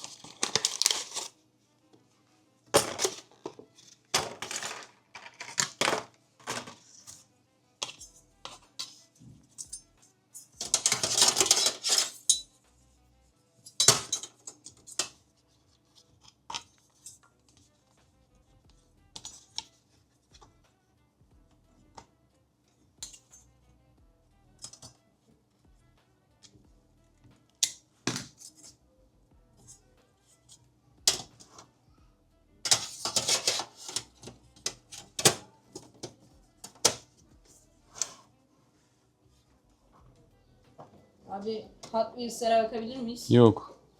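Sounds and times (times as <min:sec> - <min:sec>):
small parts clattering on workbench: 0:00.0 - 0:01.3, 0:02.8 - 0:07.2, 0:10.6 - 0:12.4, 0:13.7 - 0:15.2, 0:32.7 - 0:37.0.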